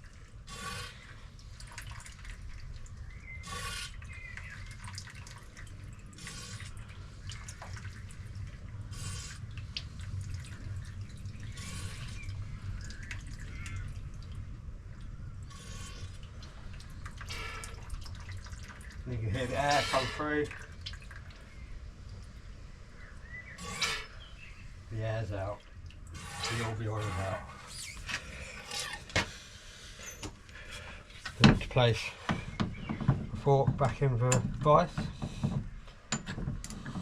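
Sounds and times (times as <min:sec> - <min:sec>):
steady low hum: 0:00.0 - 0:37.0.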